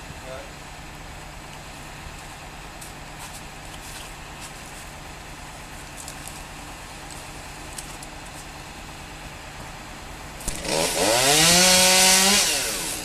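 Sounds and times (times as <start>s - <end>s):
engine idling: 0.0s - 13.0s
light clicks and crackles: 5.7s - 8.5s.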